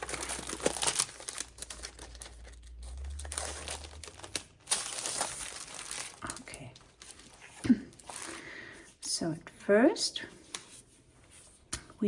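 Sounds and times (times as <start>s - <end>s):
packaging crinkling and rustling: 0.0s - 8.4s
low rumble: 2.2s - 4.5s.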